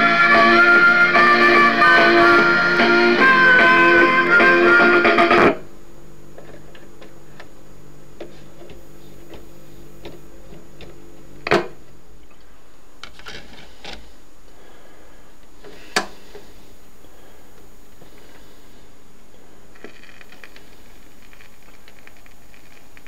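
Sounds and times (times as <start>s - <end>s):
low hum: 0.0s - 13.0s
record player crackle: 0.0s - 23.0s.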